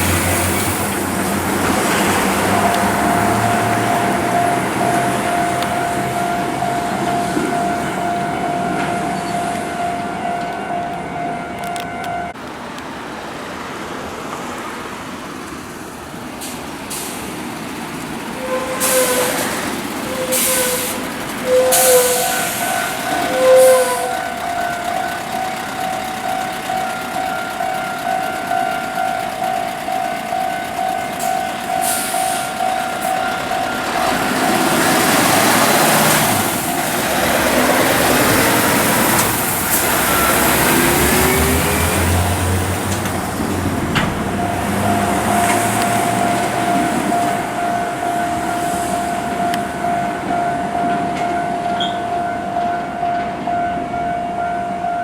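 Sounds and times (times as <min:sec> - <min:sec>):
level crossing warning bell: 0:00.0 - 0:12.4, 0:17.9 - 0:55.0
truck diesel engine rumbling: 0:00.0 - 0:53.6
air brake hisses: 0:16.4 - 0:17.5, 0:18.4 - 0:24.2, 0:31.8 - 0:33.2.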